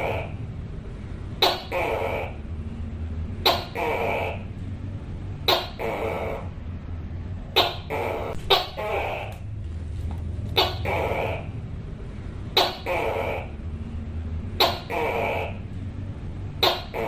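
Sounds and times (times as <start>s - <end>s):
gecko calling: 0.0s - 0.4s, 1.4s - 2.5s, 3.4s - 4.6s, 5.4s - 6.6s, 7.5s - 9.6s, 10.5s - 11.6s, 12.5s - 13.6s, 14.5s - 15.7s, 16.6s - 17.0s
low hum: 0.0s - 17.0s.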